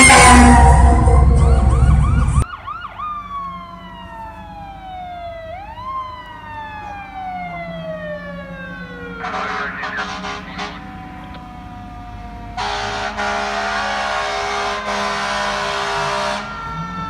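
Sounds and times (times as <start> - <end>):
fire truck siren yelping: 0.0 - 17.0
siren winding down in pitch: 0.0 - 17.0.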